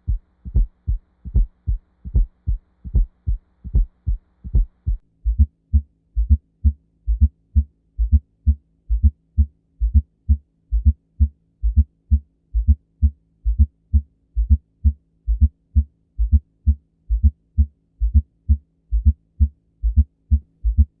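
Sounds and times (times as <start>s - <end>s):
heartbeat through stethoscope: 0.0s - 7.3s, 18.0s - 21.0s.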